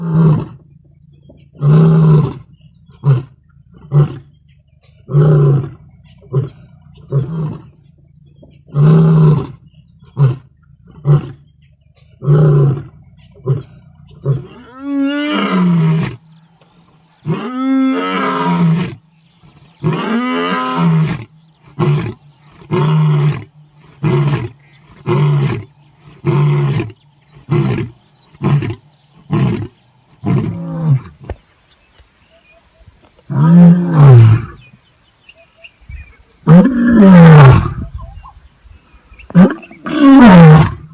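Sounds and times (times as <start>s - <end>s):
lion grunting calls: 1.3s - 31.4s, 39.2s - 40.9s
lion roaring: 17.2s - 31.3s, 36.4s - 37.8s, 39.3s - 40.9s.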